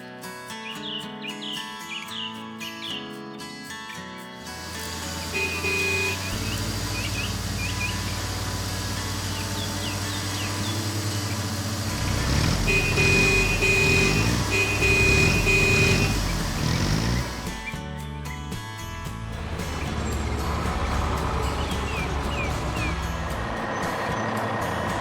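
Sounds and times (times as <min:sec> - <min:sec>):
bird chirps: 0:00.6 - 0:03.2, 0:05.1 - 0:08.4
heavy vehicle engine running: 0:04.4 - 0:17.8, 0:18.9 - 0:25.0
reversing alarm beeps: 0:05.3 - 0:06.4, 0:12.7 - 0:16.3.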